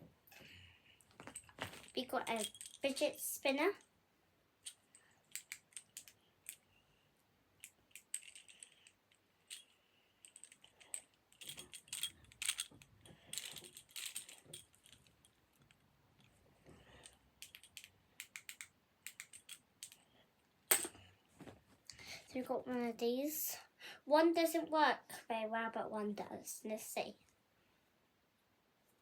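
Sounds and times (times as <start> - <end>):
fidget toys clicking and clinking: 1.1 - 3.8, 4.6 - 6.7, 7.6 - 20.1.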